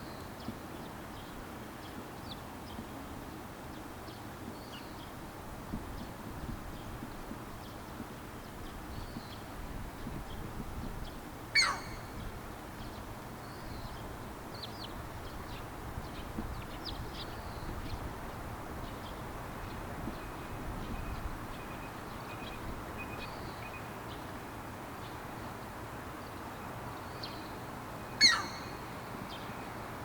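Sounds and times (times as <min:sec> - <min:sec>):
small birds chirping: 0:28.2 - 0:29.8.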